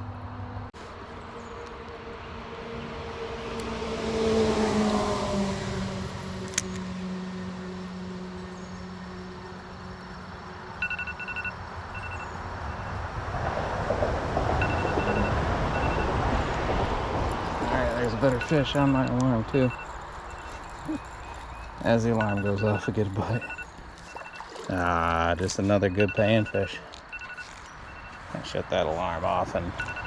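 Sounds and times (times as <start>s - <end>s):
vehicle passing: 2.0s - 30.0s
alarm high beeps: 10.8s - 12.9s, 14.6s - 16.2s, 18.4s - 20.5s, 22.2s - 24.5s, 25.9s - 28.2s, 29.8s - 30.0s.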